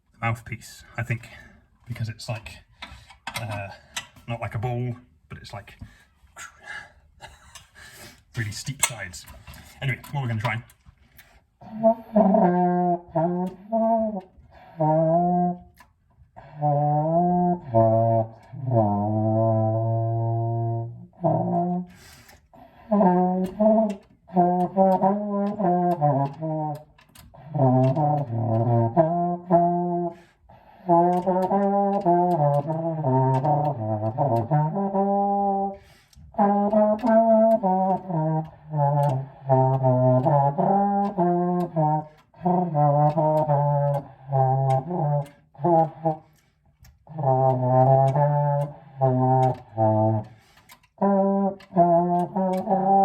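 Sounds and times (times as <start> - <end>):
french horn playing low notes: 11.6 - 53.0.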